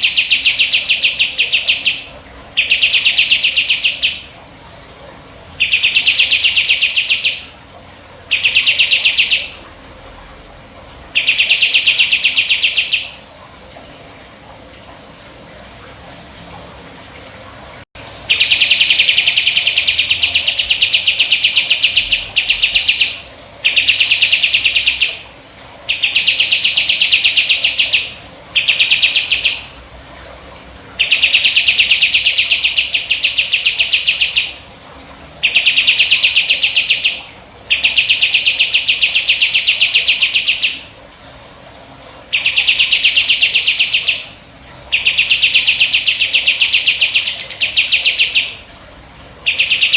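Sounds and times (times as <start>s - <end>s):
songbird trilling: 0.0s - 4.3s, 5.6s - 7.5s, 8.3s - 9.6s, 11.2s - 13.2s, 18.3s - 25.2s, 25.9s - 29.7s, 35.4s - 40.8s, 42.4s - 44.3s, 44.9s - 48.6s, 49.5s - 49.9s.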